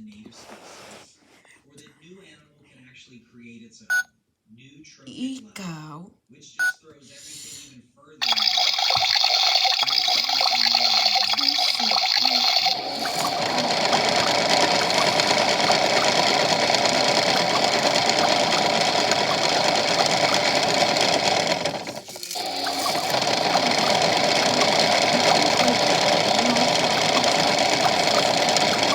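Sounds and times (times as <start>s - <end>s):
toy washing machine electronic sound: 8.2s - 28.9s.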